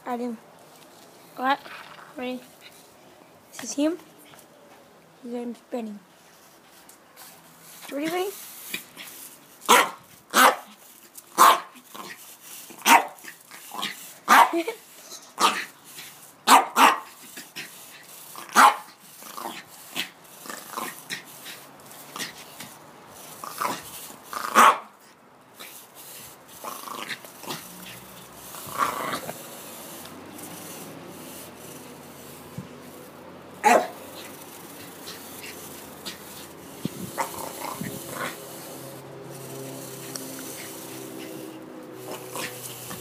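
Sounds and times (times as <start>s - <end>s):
dog barking: 9.7s - 10.7s, 11.4s - 11.7s, 12.8s - 13.2s, 14.3s - 14.6s, 16.5s - 17.1s, 18.6s - 18.9s, 24.5s - 24.9s, 33.6s - 33.9s.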